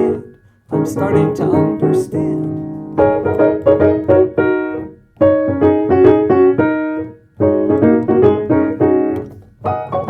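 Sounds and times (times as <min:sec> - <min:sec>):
piano phrase: 0:00.0 - 0:10.0.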